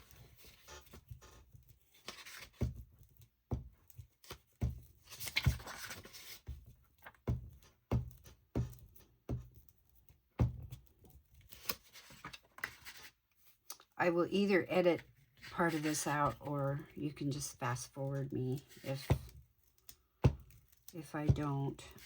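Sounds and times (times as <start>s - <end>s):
paper rustling: 0.0s - 2.6s, 4.1s - 7.2s, 11.4s - 13.6s.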